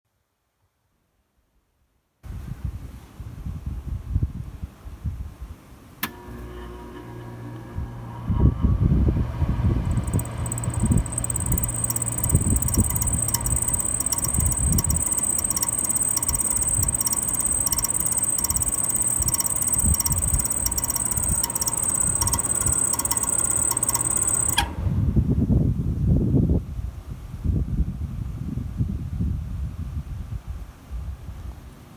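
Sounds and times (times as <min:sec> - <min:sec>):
compressor whining and thumping: 0:06.0 - 0:25.5.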